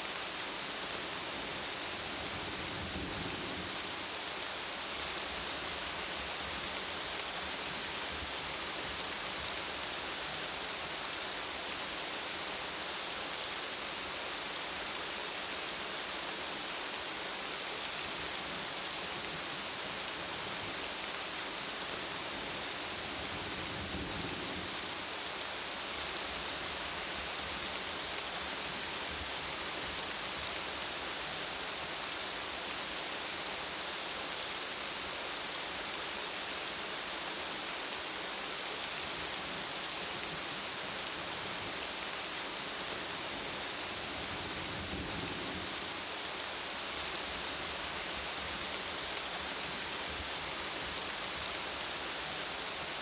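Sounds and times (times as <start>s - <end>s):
rain on hard surfaces: 0.0s - 53.0s.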